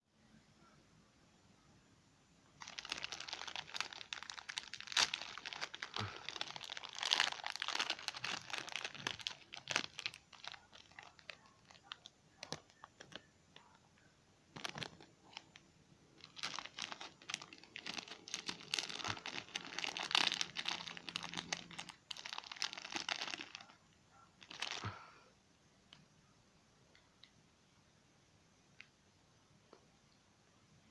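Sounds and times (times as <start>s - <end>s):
crunchy food being eaten: 2.6s - 11.2s
crinkly packet being handled: 2.6s - 13.9s, 14.5s - 25.1s.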